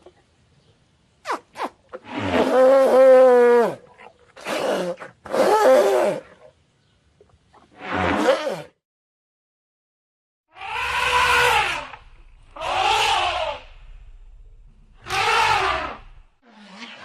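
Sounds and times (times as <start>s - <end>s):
elephants calling: 10.5s - 14.0s, 15.0s - 16.9s.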